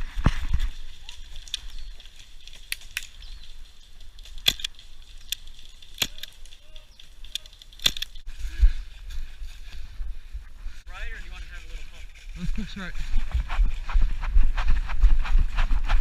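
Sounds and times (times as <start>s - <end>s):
wind rumble on microphone: 8.2s - 16.0s.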